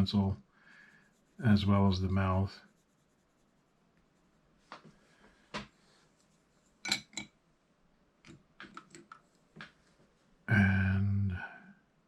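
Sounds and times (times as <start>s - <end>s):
pencils clicking and tapping: 8.2s - 9.8s.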